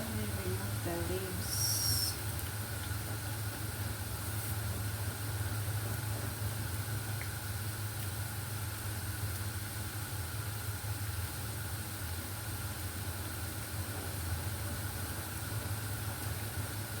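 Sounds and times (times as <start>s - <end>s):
constant hiss: 0.0s - 3.2s
motor or fan humming: 0.0s - 17.0s.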